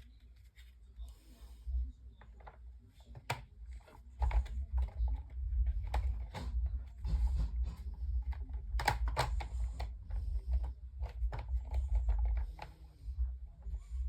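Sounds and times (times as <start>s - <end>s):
fan grill clicking and knocking: 4.2s - 9.9s.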